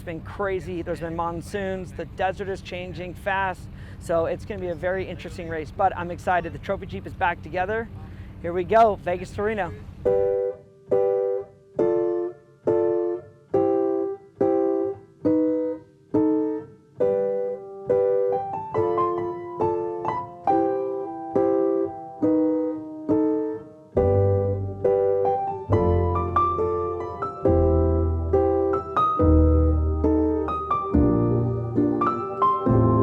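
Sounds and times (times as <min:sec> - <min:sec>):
keyboard chords: 0:08.6 - 0:33.0
low bass: 0:24.0 - 0:33.0.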